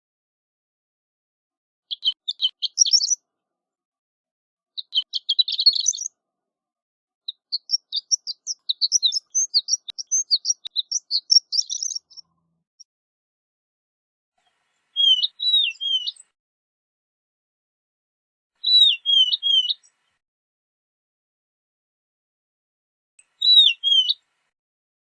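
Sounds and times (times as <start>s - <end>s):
lark singing high tinkling notes: 7.6s - 12.2s.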